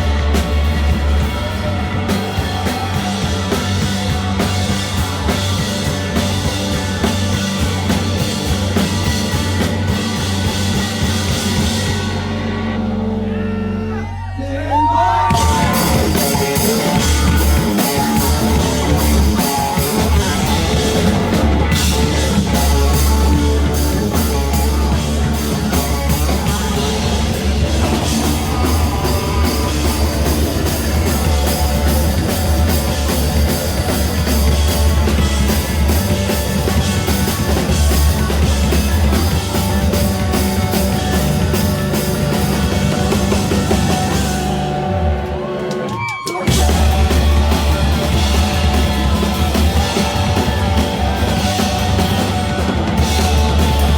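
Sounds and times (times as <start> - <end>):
driving drum kit: 0.0 - 13.4, 14.8 - 53.9
live rock band playing: 0.0 - 14.1, 15.2 - 53.9.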